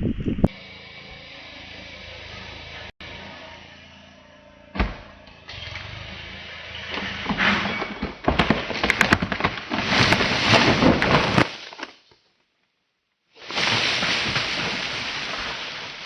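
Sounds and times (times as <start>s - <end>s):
wood cracking and branches crashing: 6.9s - 12.3s, 13.4s - 16.0s.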